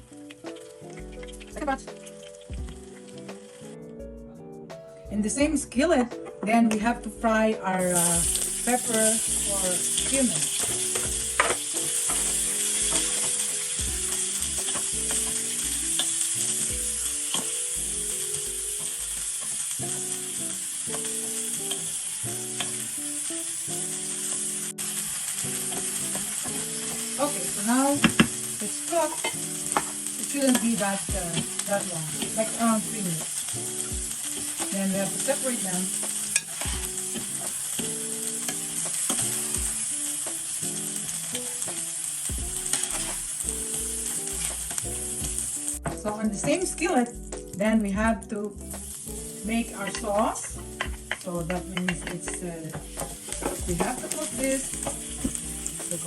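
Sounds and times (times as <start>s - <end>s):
peppers sizzling in oil: 0.0s - 3.8s, 6.7s - 56.0s
utensil tapping skillet: 8.0s - 47.0s, 48.7s - 56.0s
utensil tapping a pan: 27.8s - 28.4s, 29.0s - 31.6s, 49.7s - 56.0s.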